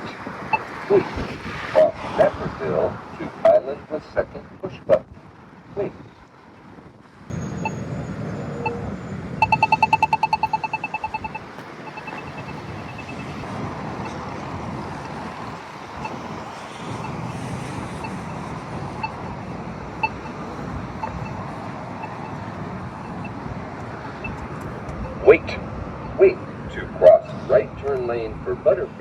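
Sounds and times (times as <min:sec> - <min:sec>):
rapid ticking of crossing signal: 0:00.0 - 0:00.8, 0:07.6 - 0:26.3
passing traffic: 0:00.0 - 0:29.0.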